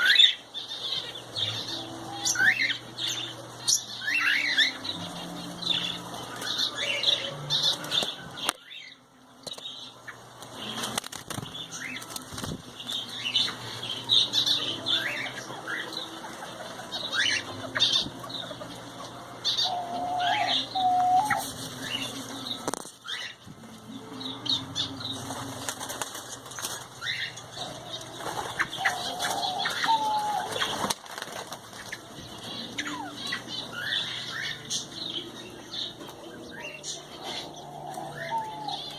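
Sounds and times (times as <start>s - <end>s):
small birds chirping: 0.0s - 38.9s
wings fluttering: 10.4s - 13.2s, 25.1s - 32.7s.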